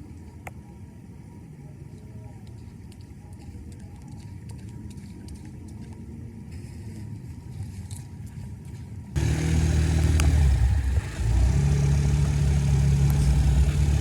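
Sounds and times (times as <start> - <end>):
engine running: 9.2 - 14.0.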